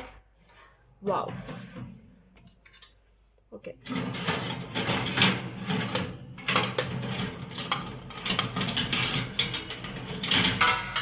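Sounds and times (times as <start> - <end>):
metal oven accessories clinking: 3.9 - 11.0.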